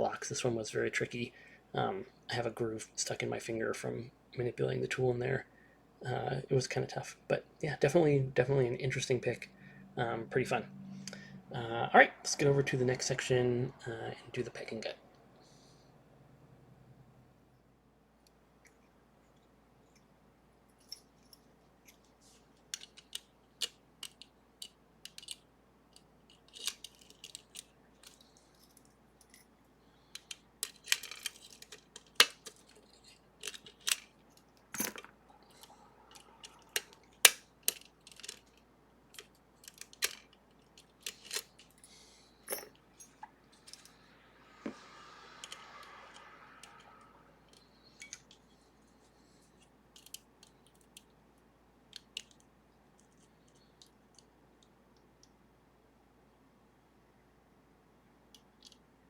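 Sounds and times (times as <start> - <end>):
lock-picking tools clicking and scraping: 20.8 - 44.0, 45.4 - 46.9, 47.5 - 48.6, 49.2 - 51.1, 51.9 - 52.4.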